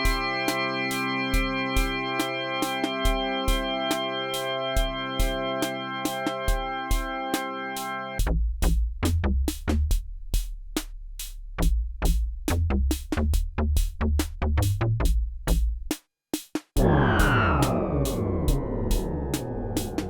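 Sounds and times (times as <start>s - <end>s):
dense synth with falling pitch: 16.8s - 20.0s
synth bass line: 16.8s - 20.0s.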